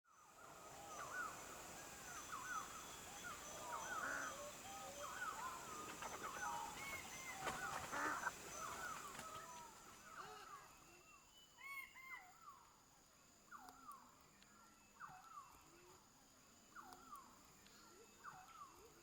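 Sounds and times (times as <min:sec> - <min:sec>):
birds calling: 0:00.3 - 0:10.3.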